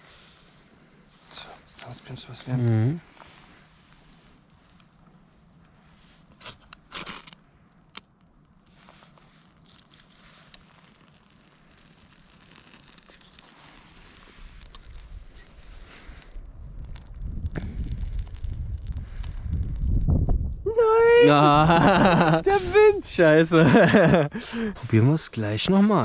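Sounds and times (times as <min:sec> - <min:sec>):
ferro rod scraping: 0:03.2 - 0:20.0
wind rumble on microphone: 0:14.4 - 0:23.2.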